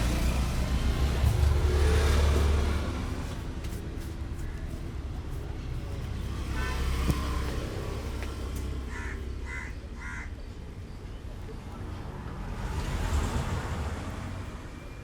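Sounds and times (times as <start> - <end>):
road traffic rumble: 0.0 - 15.0
bird calling: 8.9 - 10.5.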